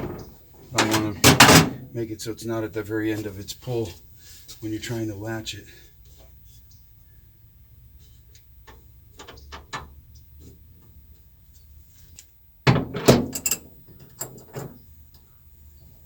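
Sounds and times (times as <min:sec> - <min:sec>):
loud metallic clatter: 0:00.0 - 0:01.9.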